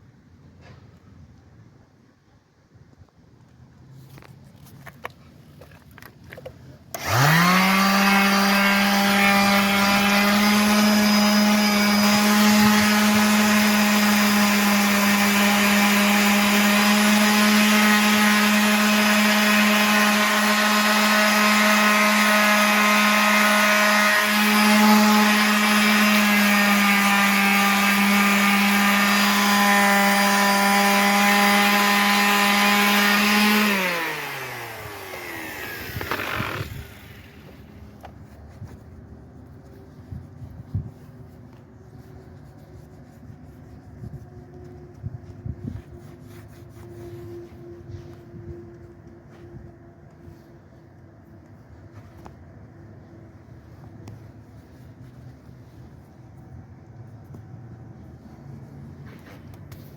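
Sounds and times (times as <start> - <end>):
power tool motor whining: 6.9 - 38.1.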